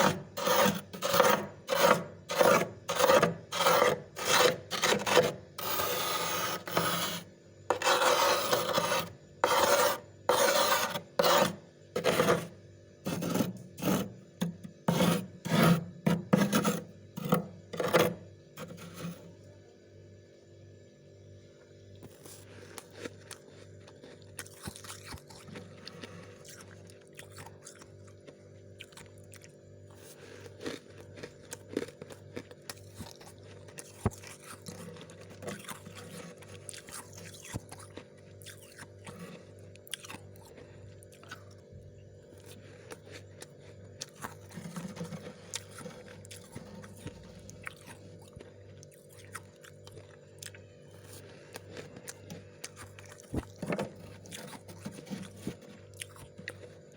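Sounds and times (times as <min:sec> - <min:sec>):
steady low hum: 0:00.0 - 0:56.9
frost being bitten and chewed: 0:22.0 - 0:41.6, 0:42.3 - 0:44.8, 0:45.5 - 0:56.9.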